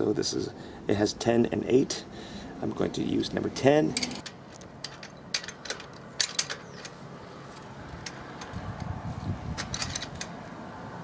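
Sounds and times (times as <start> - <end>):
wrench clicking on metal: 4.0 - 7.0.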